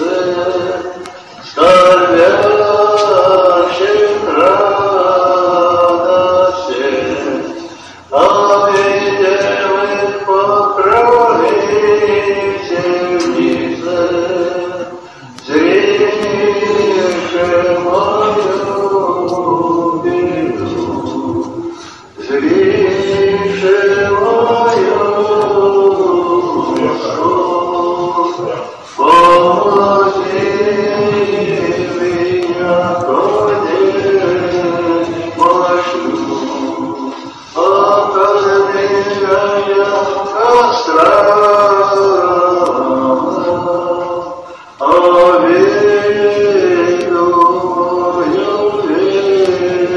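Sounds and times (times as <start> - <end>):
man chanting in long held notes: 0.0 - 49.9.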